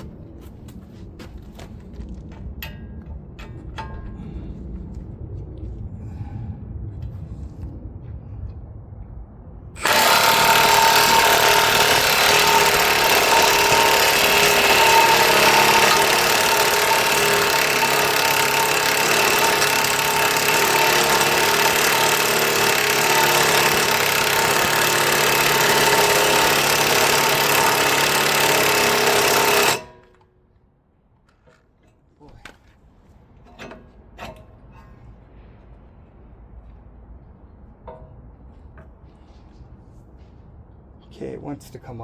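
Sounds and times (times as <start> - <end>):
impact tool hammering: 9.8 - 30.1.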